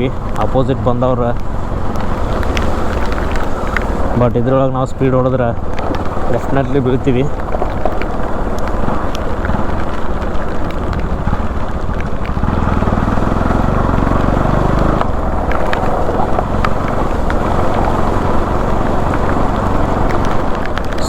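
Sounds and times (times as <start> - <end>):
motorcycle engine running: 0.0 - 21.0
wind and road noise: 0.0 - 21.0.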